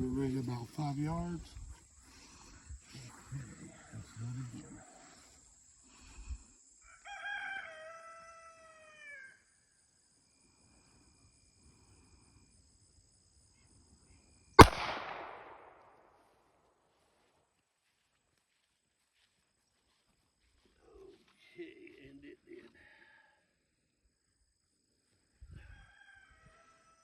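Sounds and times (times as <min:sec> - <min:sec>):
rooster crowing: 0:06.8 - 0:09.5, 0:25.6 - 0:27.0
pistol shot with echo: 0:14.6 - 0:16.1.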